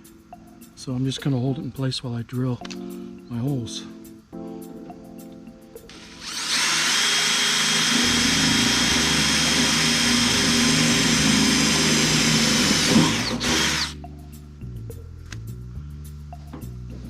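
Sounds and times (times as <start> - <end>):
electric drill boring through wood: 5.9 - 14.0.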